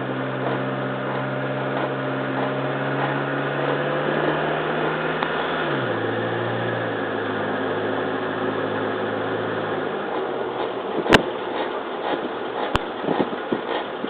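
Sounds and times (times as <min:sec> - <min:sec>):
car engine running: 0:00.0 - 0:14.0
road noise: 0:00.0 - 0:14.0.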